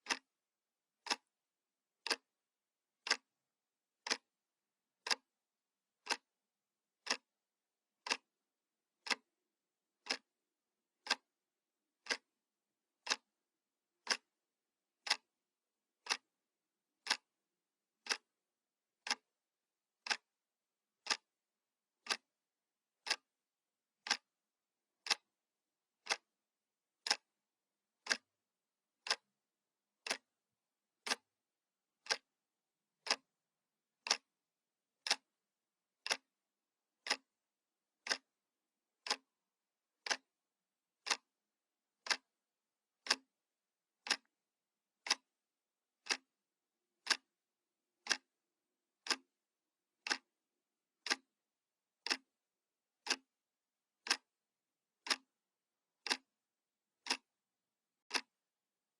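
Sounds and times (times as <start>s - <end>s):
clock ticking: 0.0s - 0.3s, 1.0s - 1.3s, 2.0s - 2.3s, 3.0s - 3.3s, 4.0s - 4.3s, 5.0s - 5.3s, 6.0s - 6.2s, 7.0s - 7.3s, 8.0s - 8.3s, 9.0s - 9.3s, 10.0s - 10.2s, 11.0s - 11.3s, 12.0s - 12.3s, 13.0s - 13.3s, 14.0s - 14.4s, 15.0s - 15.3s, 16.0s - 16.3s, 17.0s - 17.3s, 18.0s - 18.3s, 19.0s - 19.2s, 20.0s - 20.3s, 21.0s - 21.3s, 22.0s - 22.3s, 23.0s - 23.3s, 24.0s - 24.3s, 25.0s - 25.3s, 26.0s - 26.3s, 27.0s - 27.3s, 28.0s - 28.3s, 29.0s - 29.3s, 30.0s - 30.3s, 31.0s - 31.3s, 32.0s - 32.3s, 33.0s - 33.3s, 34.0s - 34.3s, 35.0s - 35.3s, 36.0s - 36.3s, 37.0s - 37.3s, 38.0s - 38.3s, 39.0s - 39.3s, 40.0s - 40.3s, 41.0s - 41.3s, 42.0s - 42.3s, 43.0s - 43.3s, 44.0s - 44.3s, 45.0s - 45.3s, 46.0s - 46.3s, 47.0s - 47.3s, 48.0s - 48.3s, 49.0s - 49.2s, 50.0s - 50.3s, 51.0s - 51.3s, 52.0s - 52.3s, 53.0s - 53.3s, 54.0s - 54.3s, 55.0s - 55.3s, 56.0s - 56.3s, 57.0s - 57.3s, 58.1s - 58.4s.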